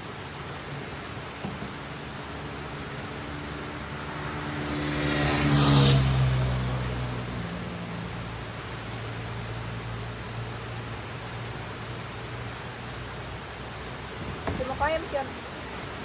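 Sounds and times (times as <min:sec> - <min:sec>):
motor vehicle passing by: 0:01.9 - 0:13.4.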